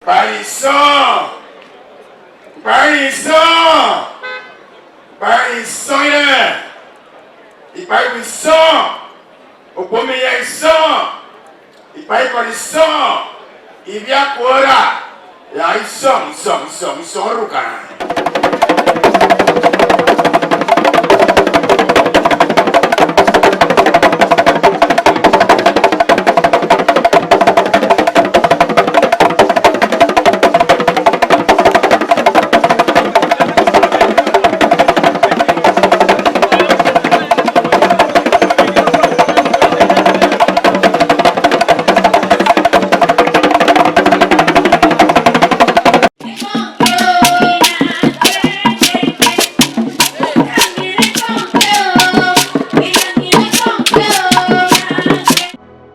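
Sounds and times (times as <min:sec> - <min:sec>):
knocks and clacks: 0:18.0 - 0:55.6
percussion-driven music: 0:18.0 - 0:55.6.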